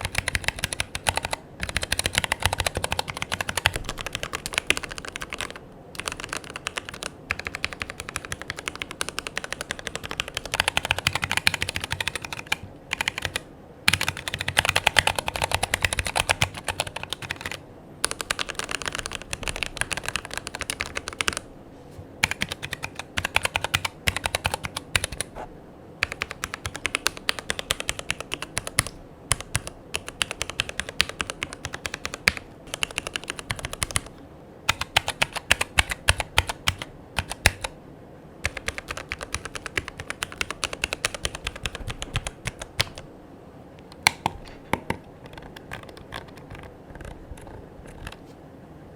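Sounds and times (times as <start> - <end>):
mechanical keyboard typing: 0.0 - 21.5, 22.2 - 25.3, 26.0 - 37.8, 38.4 - 43.1, 43.8 - 48.2.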